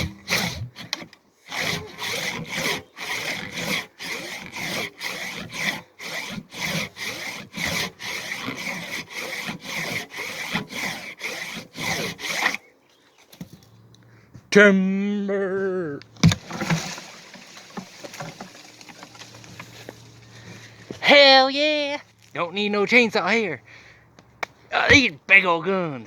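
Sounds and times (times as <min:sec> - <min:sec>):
handsaw cutting tree trunk: 0:00.0 - 0:12.7, 0:16.2 - 0:21.0.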